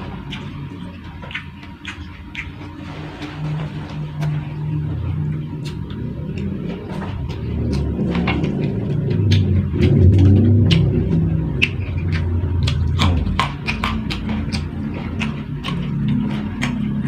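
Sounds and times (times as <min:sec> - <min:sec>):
crunchy chewing: 0:00.0 - 0:17.0
loud low background drone: 0:00.0 - 0:17.0
mouth clicks: 0:07.2 - 0:17.0.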